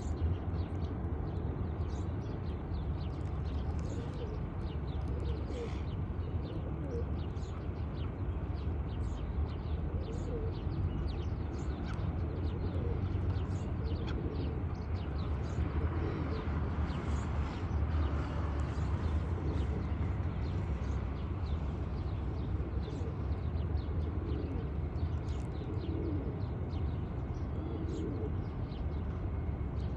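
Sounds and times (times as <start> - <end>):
pigeons cooing: 3.8 - 7.2, 9.9 - 10.6, 12.2 - 14.7, 15.5 - 16.6, 19.2 - 20.0, 22.6 - 24.9, 25.6 - 26.5, 27.4 - 28.5.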